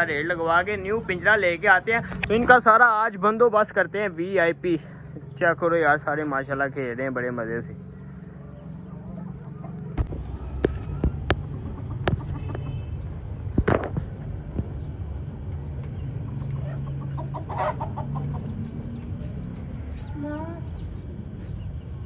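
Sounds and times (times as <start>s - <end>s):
chickens clucking: 8.5s - 21.7s.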